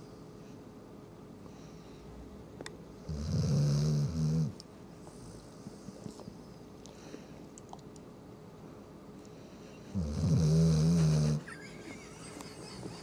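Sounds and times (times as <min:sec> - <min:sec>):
dog snoring: 0:03.1 - 0:04.6, 0:09.9 - 0:11.5.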